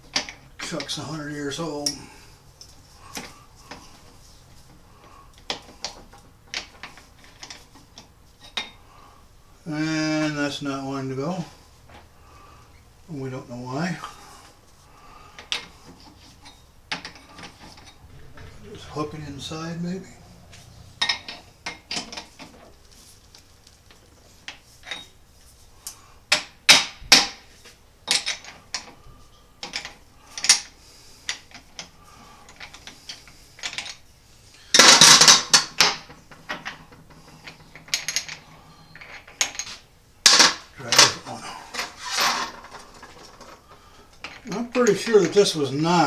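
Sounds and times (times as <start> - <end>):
steel parts clinking and rattling: 5.3 - 8.8, 15.4 - 23.7, 32.5 - 34.0, 34.7 - 44.7.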